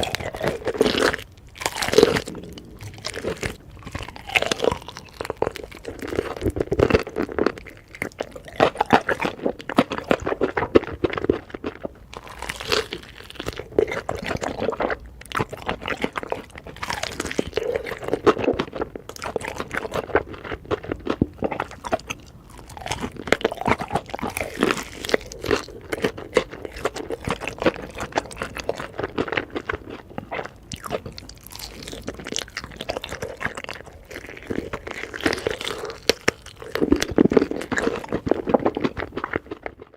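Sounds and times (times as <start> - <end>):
crunching fried chicken: 0.0 - 39.9.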